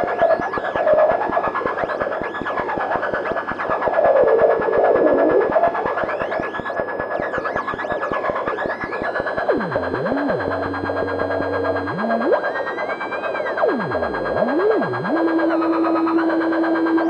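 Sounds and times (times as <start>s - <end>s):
swooping pitched tone drone: 8.7s - 17.0s.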